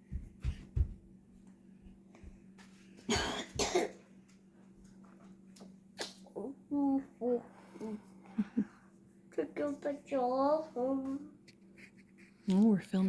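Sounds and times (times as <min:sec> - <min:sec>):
steady low hum: 0:00.0 - 0:13.0
person coughing: 0:03.1 - 0:04.0.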